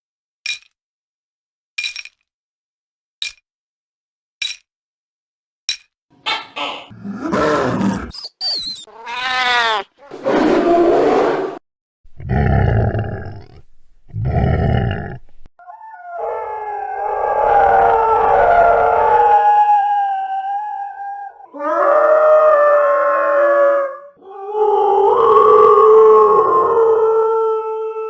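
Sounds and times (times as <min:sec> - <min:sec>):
werewolf growls and snarls: 0:06.9 - 0:08.2, 0:10.1 - 0:15.4
long drawn-out howl: 0:15.6 - 0:28.0.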